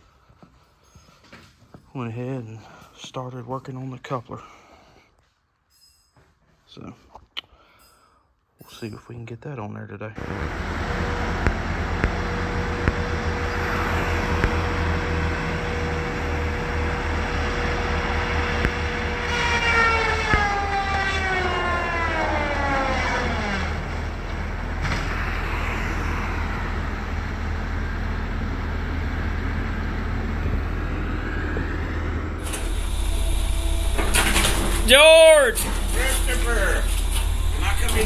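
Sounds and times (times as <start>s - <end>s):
diesel engine rumbling: 10.2s - 38.0s
whine sliding down in pitch: 10.2s - 38.0s.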